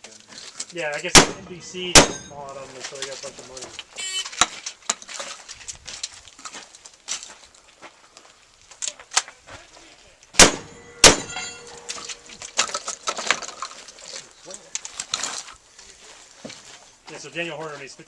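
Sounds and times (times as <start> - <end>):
shotgun shots: 1.1 - 2.4, 10.4 - 12.1
ringing tone: 10.7 - 12.4.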